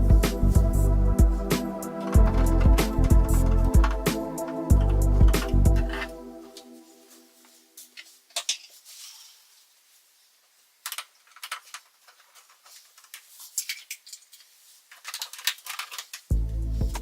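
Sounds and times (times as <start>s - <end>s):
clicks of small hard objects: 10.8s - 16.3s.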